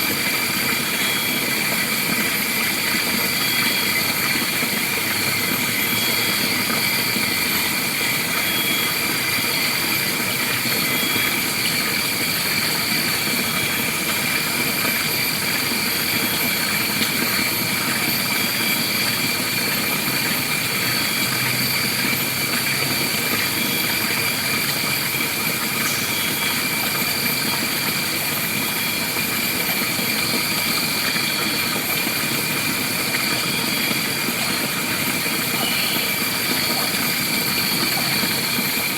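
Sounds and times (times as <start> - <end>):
high-pitched whines: 28.8 - 38.9.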